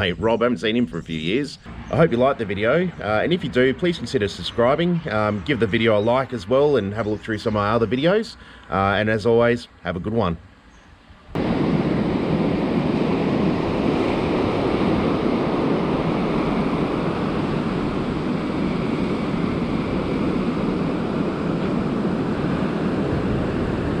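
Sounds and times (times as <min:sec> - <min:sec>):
surf breaking on beach: 0:11.4 - 0:24.0.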